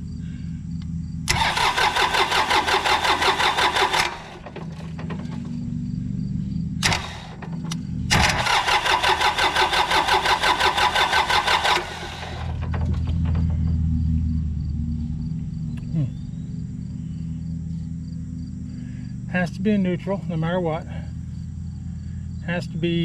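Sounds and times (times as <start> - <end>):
diesel engine cranking: 0.0 - 17.4.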